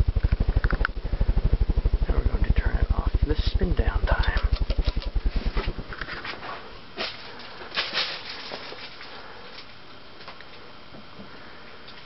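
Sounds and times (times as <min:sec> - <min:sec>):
ceiling fan blades thumping: 0:00.0 - 0:12.0
faint clicks and ticks: 0:00.2 - 0:01.0.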